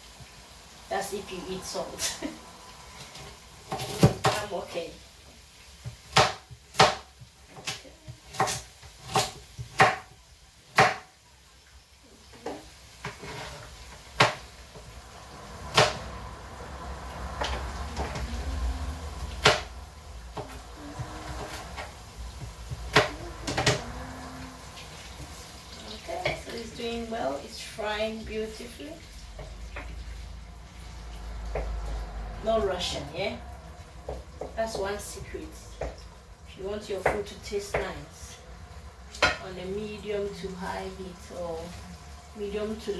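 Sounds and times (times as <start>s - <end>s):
kitchen utensils knocking: 17.2s - 26.7s.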